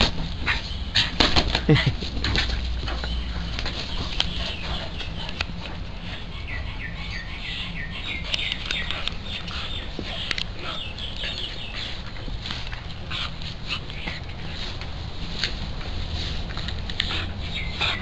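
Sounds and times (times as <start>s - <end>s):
birds chirping: 0.0s - 15.0s, 15.8s - 18.0s
sharp clicks: 8.3s - 9.2s.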